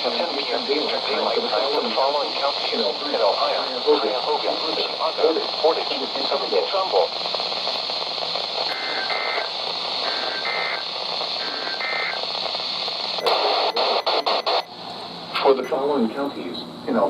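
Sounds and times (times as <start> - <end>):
crackling static with clicks: 0.0 - 14.7
radio static hiss: 0.0 - 14.7, 15.3 - 17.0
buzzy two-tone data warble: 8.7 - 10.8.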